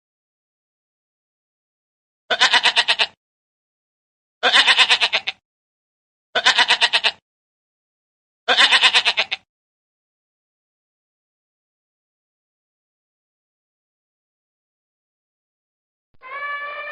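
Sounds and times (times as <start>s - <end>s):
farm animal bleating: 2.3s - 3.2s, 4.4s - 5.4s, 6.4s - 7.2s, 8.5s - 9.5s, 16.2s - 16.9s.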